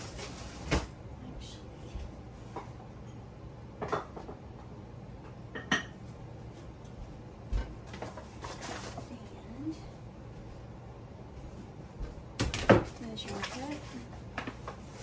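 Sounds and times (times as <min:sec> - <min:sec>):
dishes and utensils clinking: 0:05.5 - 0:06.1.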